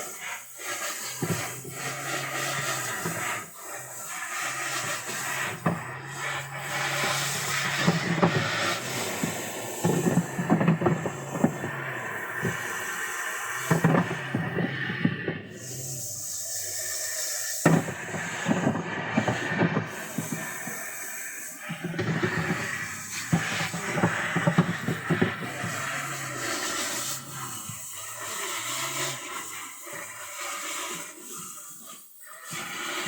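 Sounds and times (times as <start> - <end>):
steady hiss: 0.0 - 33.0
taps and knocks of birds moving: 1.2 - 1.5, 4.6 - 15.7, 17.6 - 21.0, 21.8 - 27.8.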